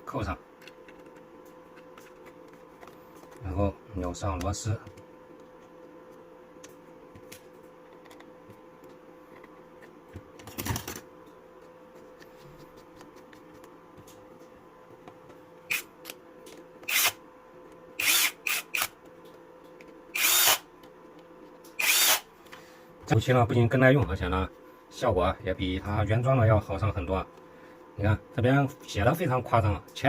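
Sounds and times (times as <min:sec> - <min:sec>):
electric screwdriver running: 0:16.9 - 0:17.2, 0:18.0 - 0:18.9, 0:20.2 - 0:20.6, 0:21.8 - 0:22.2.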